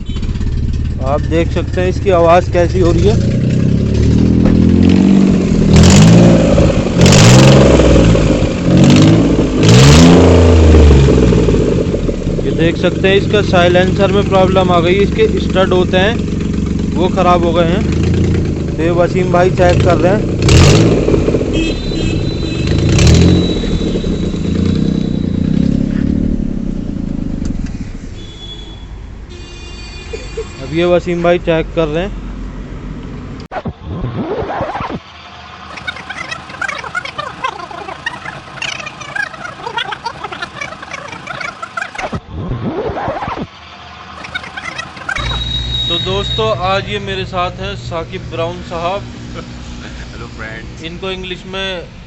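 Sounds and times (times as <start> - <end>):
car engine idling and revving: 0.0 - 29.4, 30.4 - 52.0
loud exhaust noise: 0.0 - 29.5, 35.0 - 36.7, 43.4 - 52.0.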